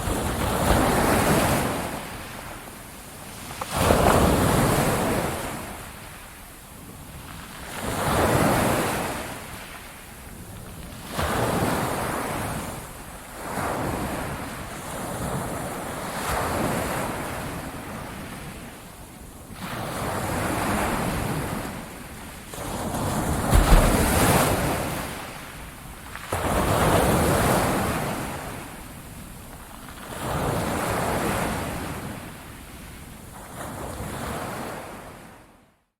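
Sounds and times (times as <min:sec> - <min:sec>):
low thump of breaking wave: 0:23.5 - 0:24.9
ocean waves breaking on shore: 0:23.5 - 0:25.3.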